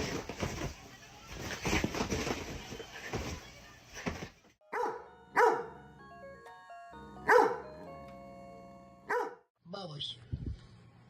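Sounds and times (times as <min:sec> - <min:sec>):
dog barking: 0:04.7 - 0:05.7, 0:07.3 - 0:07.7, 0:09.1 - 0:09.4
simple chiming tune: 0:05.1 - 0:09.1.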